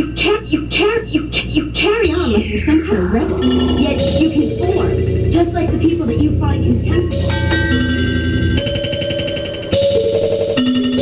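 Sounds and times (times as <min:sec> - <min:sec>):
held synthesizer notes: 0:02.0 - 0:09.7.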